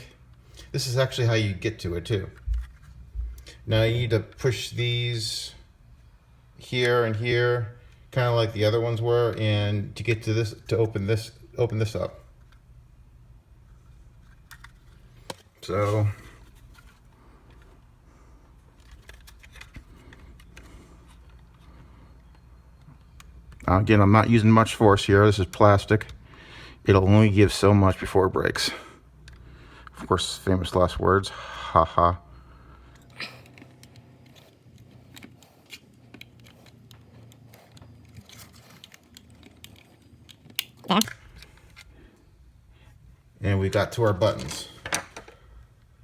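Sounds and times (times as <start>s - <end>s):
plastic clicks and scrapes: 18.7s - 23.6s, 32.9s - 41.9s.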